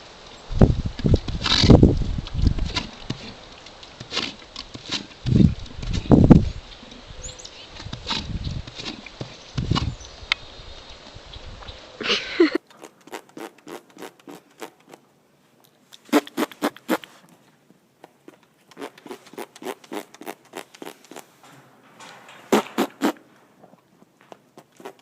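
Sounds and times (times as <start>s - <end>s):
horse smacking its lips: 1.0s - 6.0s, 12.6s - 15.0s, 15.9s - 17.4s, 18.0s - 21.3s, 22.5s - 25.0s.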